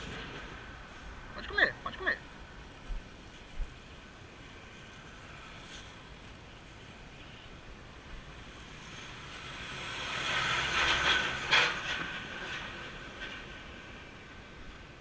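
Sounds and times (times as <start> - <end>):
vehicle passing by: 8.2 - 13.5.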